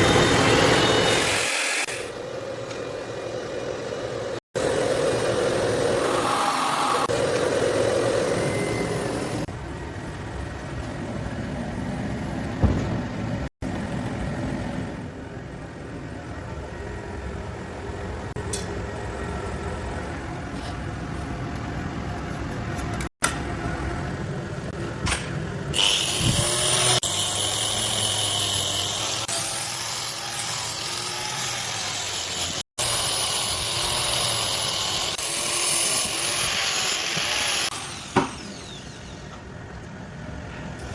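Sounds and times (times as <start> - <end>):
high machine whine: 0.0 - 12.0.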